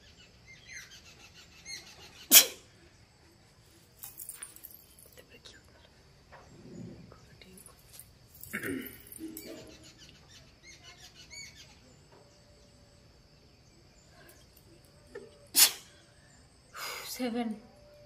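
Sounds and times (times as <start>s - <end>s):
woman sneezing: 2.3s - 2.7s.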